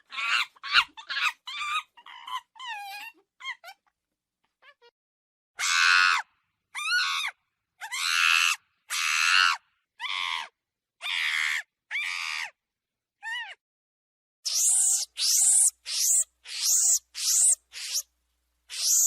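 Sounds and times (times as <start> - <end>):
monkey screeching: 0.0 - 3.8, 5.6 - 6.2, 6.8 - 12.5, 14.5 - 18.1, 18.7 - 19.0.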